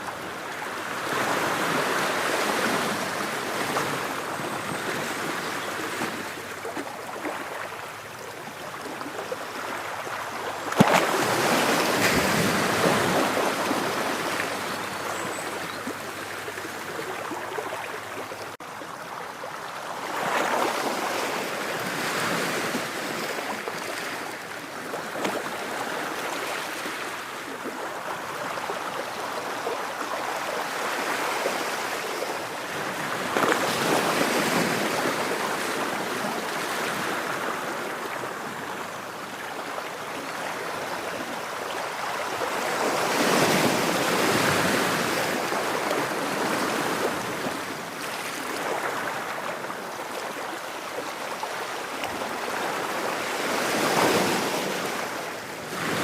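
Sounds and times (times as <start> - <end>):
ocean waves breaking: 8.9 - 18.3, 29.4 - 38.6.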